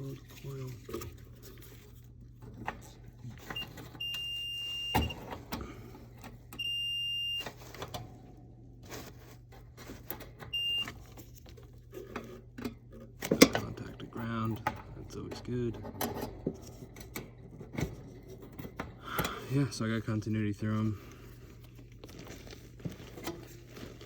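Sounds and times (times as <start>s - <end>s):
multimeter continuity beeps: 3.5s - 5.2s, 6.6s - 7.6s, 10.5s - 11.0s.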